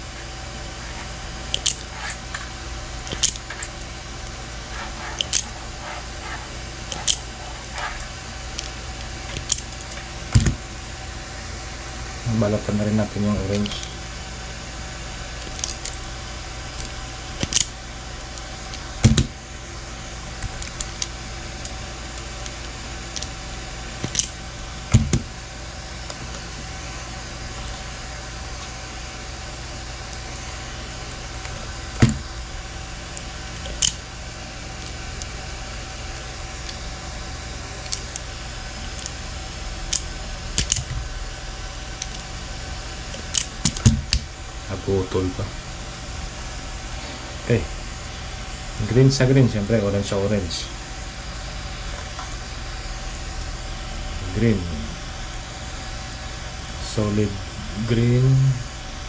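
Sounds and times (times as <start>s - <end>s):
steady fan hum: 0.0s - 59.0s
hand cutter clicking and snipping: 1.5s - 2.2s, 3.1s - 6.1s, 6.9s - 8.0s, 8.6s - 10.6s, 15.4s - 16.0s, 16.8s - 19.3s, 24.0s - 25.2s, 33.2s - 34.0s, 39.9s - 41.0s, 43.1s - 44.3s.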